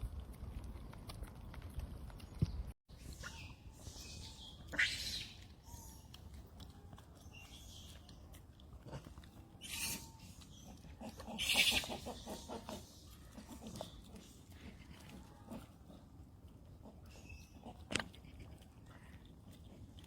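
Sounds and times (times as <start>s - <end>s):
monkeys squealing: 3.2s - 6.0s, 9.6s - 12.8s.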